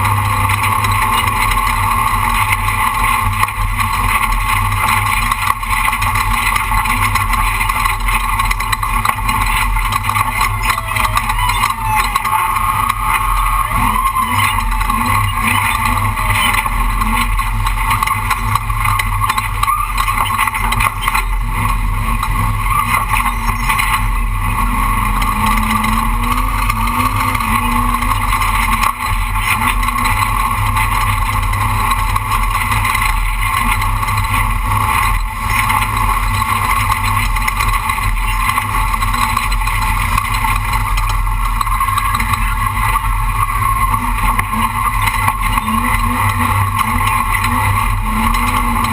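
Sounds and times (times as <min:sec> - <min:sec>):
truck engine and road noise: 0:00.0 - 0:48.9.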